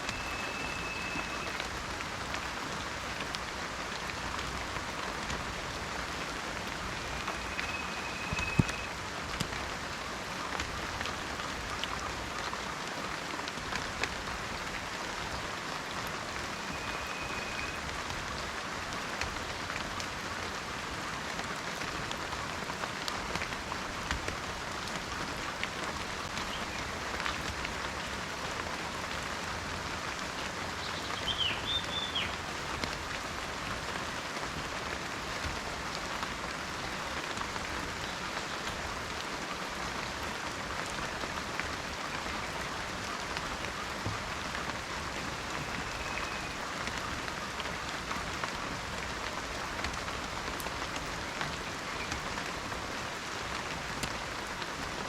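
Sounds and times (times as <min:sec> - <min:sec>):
bird calling: 0:00.0 - 0:01.6, 0:07.2 - 0:08.9, 0:31.0 - 0:32.4
rain patter in forest: 0:00.0 - 0:55.0.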